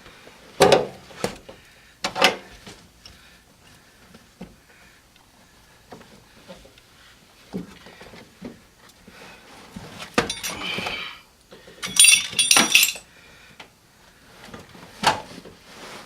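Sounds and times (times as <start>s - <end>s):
sharp metallic clinks: 10.2s - 10.8s, 11.8s - 13.0s.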